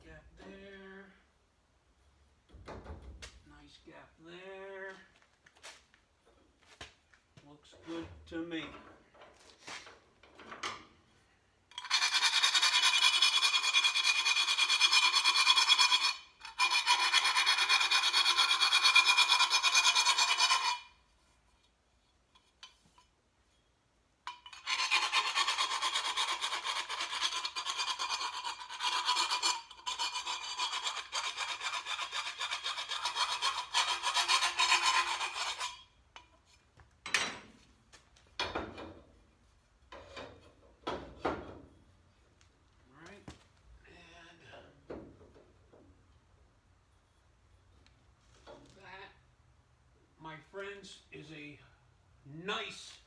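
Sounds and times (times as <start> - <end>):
grinder grinding steel tube: 11.7 - 20.9, 24.3 - 35.9.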